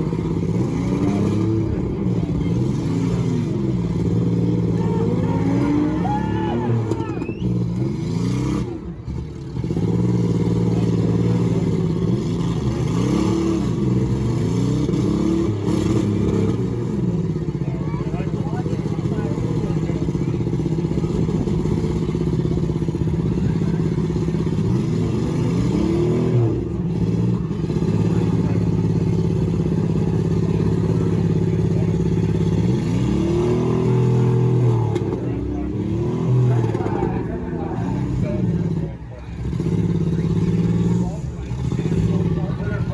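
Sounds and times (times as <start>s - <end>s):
car engines revving: 0.0s - 42.9s.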